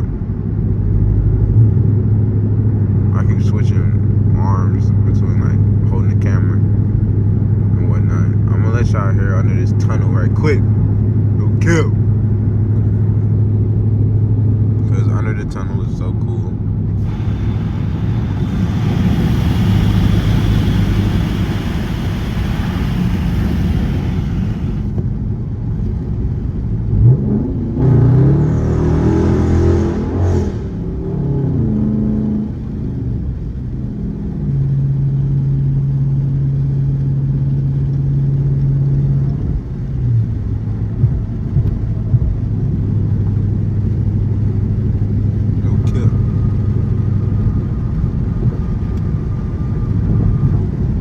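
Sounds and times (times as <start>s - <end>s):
car engine droning: 0.0s - 51.0s
car engine revving: 17.0s - 25.0s
loud rush of noise: 17.0s - 25.0s.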